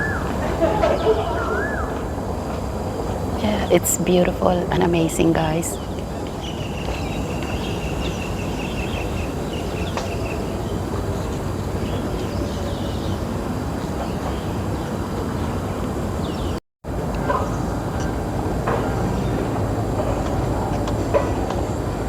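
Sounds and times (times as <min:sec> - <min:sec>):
bird chirps: 0:00.0 - 0:02.0.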